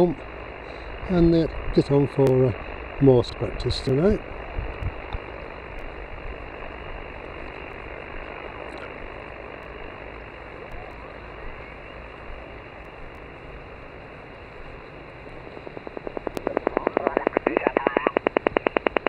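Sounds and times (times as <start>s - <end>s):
radio receiver hiss: 0.0s - 19.0s.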